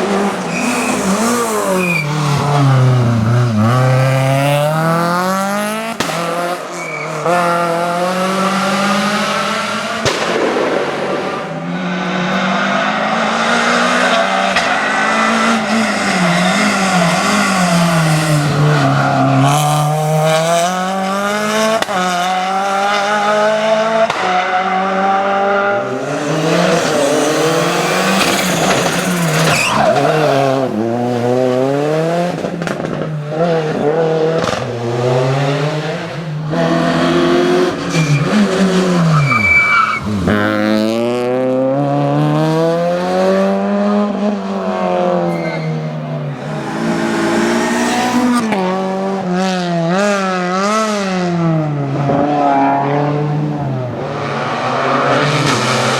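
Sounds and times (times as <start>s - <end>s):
rally car engine revving: 0.0s - 55.9s
brief high squeal: 39.2s - 40.1s, 45.2s - 45.9s.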